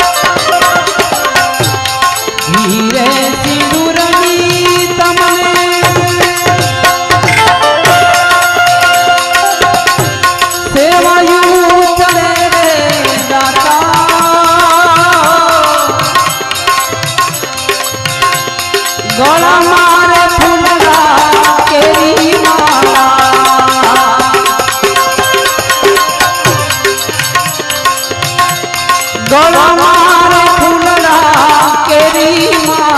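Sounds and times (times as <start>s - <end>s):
sliding melodic lead: 0.0s - 10.8s, 24.1s - 29.3s
tabla rhythm: 0.0s - 32.9s.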